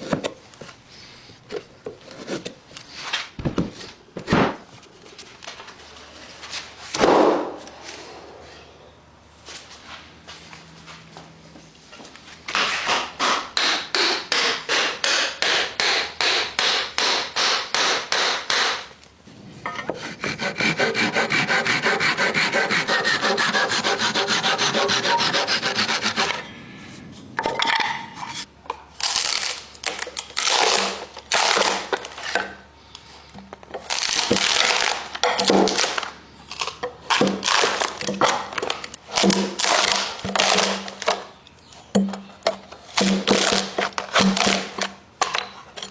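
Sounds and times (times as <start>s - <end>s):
hand tool rasping wood: 19.7s - 26.4s.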